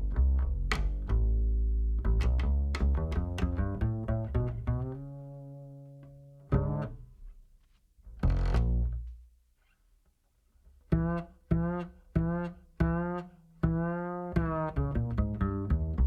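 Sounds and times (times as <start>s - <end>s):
plucked low string notes: 0.0s - 7.1s, 10.9s - 16.0s.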